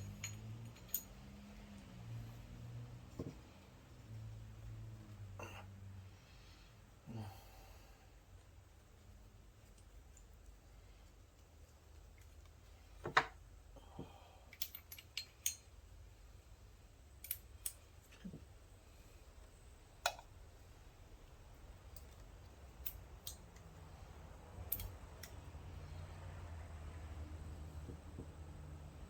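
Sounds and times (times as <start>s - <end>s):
light metal clicks and clinks: 0.0s - 2.4s, 14.3s - 16.0s, 17.1s - 18.3s, 21.8s - 25.6s.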